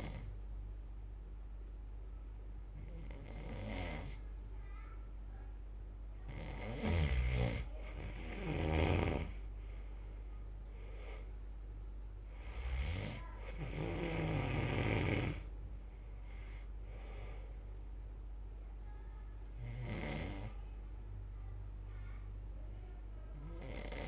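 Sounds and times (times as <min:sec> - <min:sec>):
person snoring: 0:00.0 - 0:00.3, 0:02.8 - 0:04.2, 0:06.2 - 0:09.5, 0:12.4 - 0:15.5, 0:19.5 - 0:20.6, 0:23.5 - 0:24.0.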